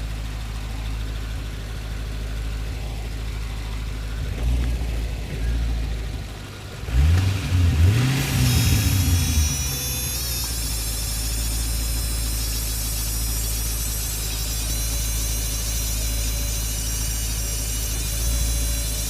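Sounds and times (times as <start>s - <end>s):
car engine idling and revving: 0.0s - 19.0s
high-pitched whine: 0.0s - 19.0s.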